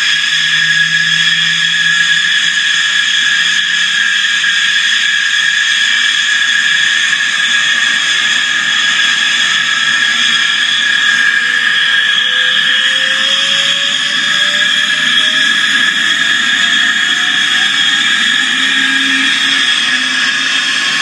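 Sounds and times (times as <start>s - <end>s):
simulated jet turbine whine: 0.0s - 21.0s.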